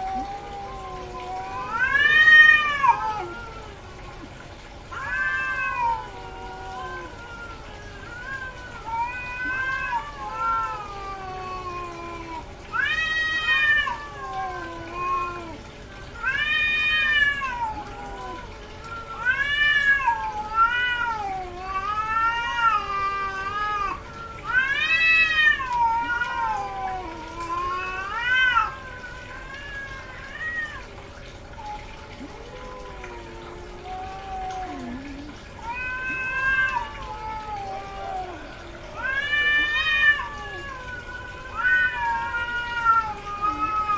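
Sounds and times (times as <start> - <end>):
cat yowling: 0.0 - 43.9.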